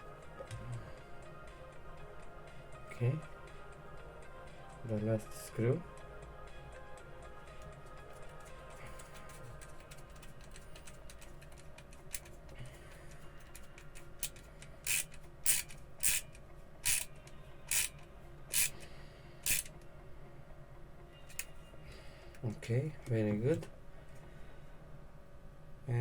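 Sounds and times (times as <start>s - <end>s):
faint screw ticks: 13.4s - 18.8s, 19.5s - 19.8s
screwdriver scraping strokes: 13.4s - 18.8s, 19.4s - 19.8s.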